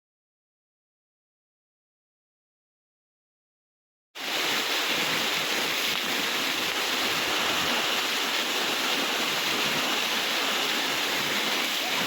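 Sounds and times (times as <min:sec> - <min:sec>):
waterfall rushing: 0:04.2 - 0:12.0.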